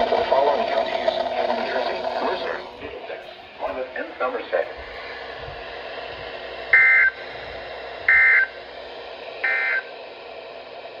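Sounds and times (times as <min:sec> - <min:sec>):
radio static: 0:00.0 - 0:05.6
two-tone data chirps: 0:06.8 - 0:07.2, 0:08.1 - 0:08.5, 0:09.4 - 0:09.9.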